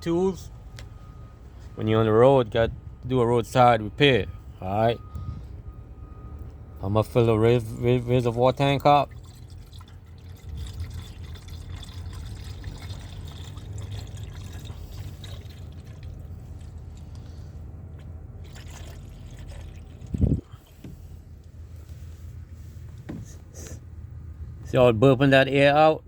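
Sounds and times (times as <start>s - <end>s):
liquid pouring into a tank: 7.5s - 17.4s, 18.4s - 20.9s.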